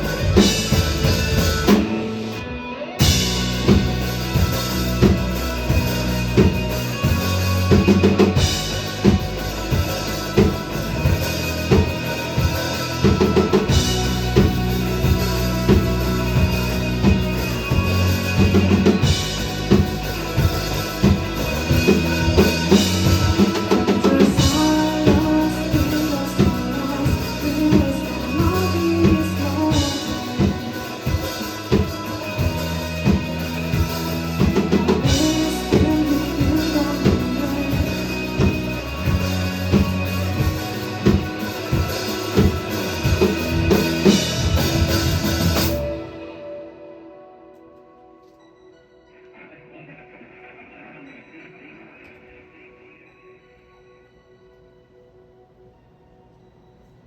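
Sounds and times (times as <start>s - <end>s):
dance track with heavy drum beat: 3.0s - 46.0s.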